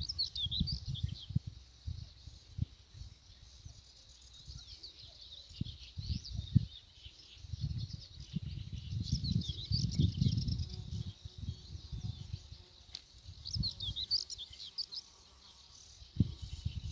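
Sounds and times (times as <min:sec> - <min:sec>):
small birds chirping: 0:00.0 - 0:16.9.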